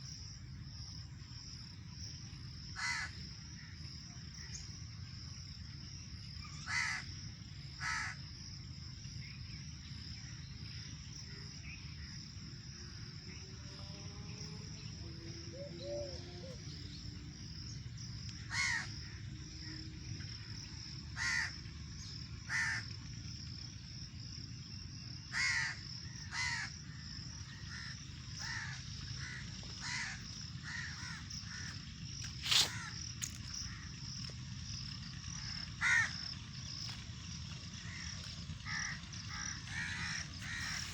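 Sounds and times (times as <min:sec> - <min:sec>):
high-pitched insect drone: 0:00.0 - 0:40.9
crows cawing: 0:02.8 - 0:03.8, 0:06.5 - 0:07.2, 0:07.8 - 0:08.2, 0:18.4 - 0:19.2, 0:21.2 - 0:21.7, 0:22.5 - 0:23.0, 0:25.3 - 0:31.8, 0:32.6 - 0:33.0, 0:35.3 - 0:36.3, 0:37.8 - 0:40.9.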